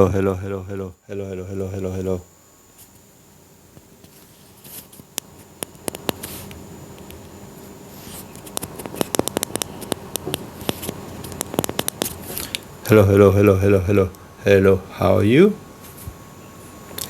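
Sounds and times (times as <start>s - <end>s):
microphone handling clicks and rustles: 8.0s - 12.7s.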